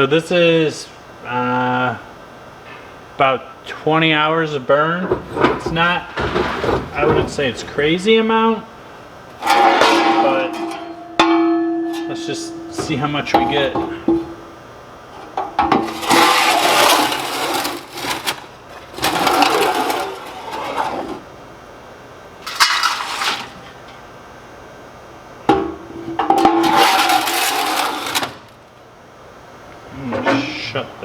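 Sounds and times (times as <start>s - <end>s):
stove grates scraping and rattling: 5.0s - 8.5s, 9.3s - 11.1s, 12.0s - 14.4s, 15.3s - 21.2s, 22.4s - 23.7s, 26.4s - 28.6s.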